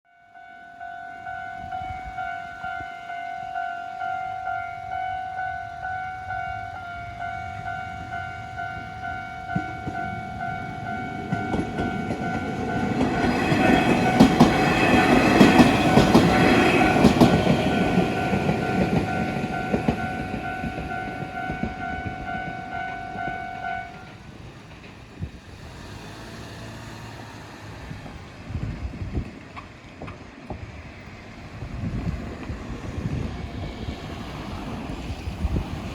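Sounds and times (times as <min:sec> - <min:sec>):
level crossing bell ringing: 0:00.1 - 0:24.1
train wheels clattering over joints: 0:09.4 - 0:28.4.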